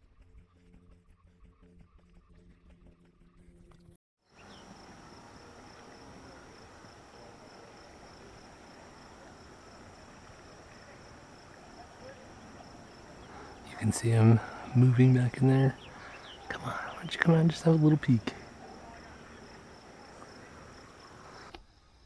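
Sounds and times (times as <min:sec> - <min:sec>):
faint low hum: 0:04.4 - 0:21.5
insect trilling: 0:04.4 - 0:21.5.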